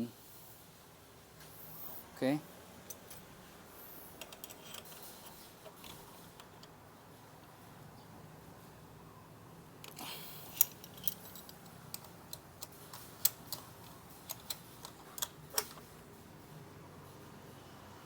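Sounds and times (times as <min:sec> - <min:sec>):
hand tools clicking on metal: 0:04.2 - 0:06.8, 0:09.8 - 0:15.9.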